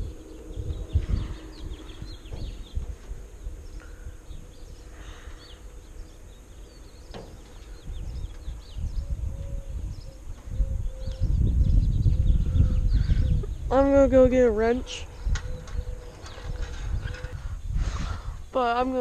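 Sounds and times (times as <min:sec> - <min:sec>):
low rumble on microphone: 0:00.0 - 0:18.8
small birds chirping: 0:00.0 - 0:19.0.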